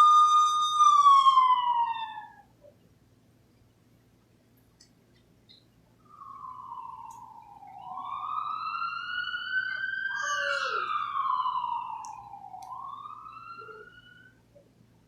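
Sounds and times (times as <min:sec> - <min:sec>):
emergency siren wailing: 0:00.0 - 0:02.5, 0:06.0 - 0:14.5.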